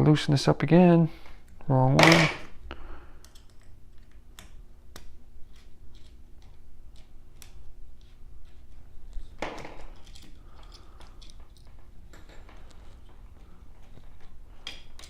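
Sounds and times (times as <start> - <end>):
hex key and metal parts clicking: 3.2 - 4.1.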